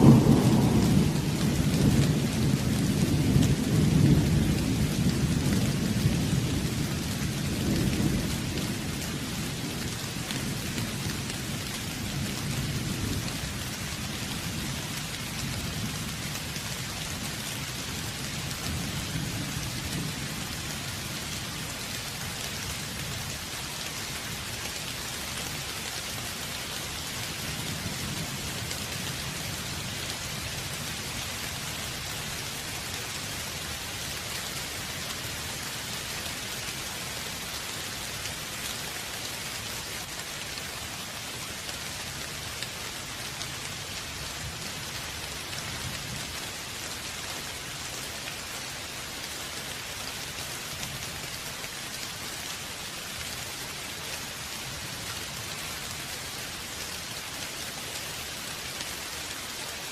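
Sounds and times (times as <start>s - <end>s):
low roll of thunder: 0.0s - 9.8s
steady rain: 0.0s - 59.9s.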